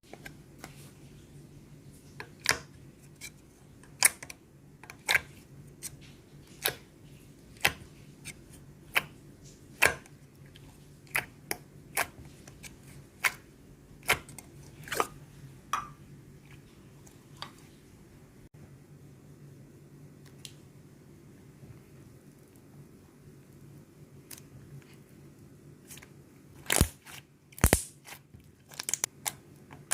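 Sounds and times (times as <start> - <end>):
steady low hum: 0.1 - 29.8
slime clicking and popping: 27.6 - 28.0.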